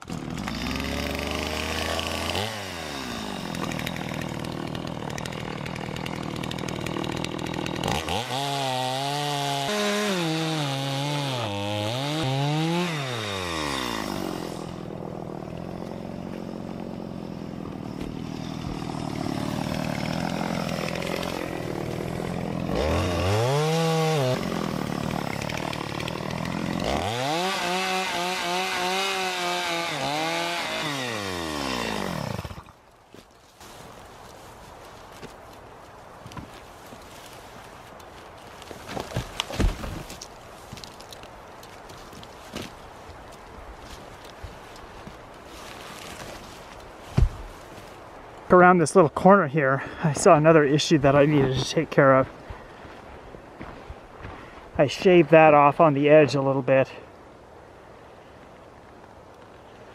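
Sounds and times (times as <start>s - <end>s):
chainsaw cutting wood: 0.0s - 32.8s, 36.3s - 48.0s.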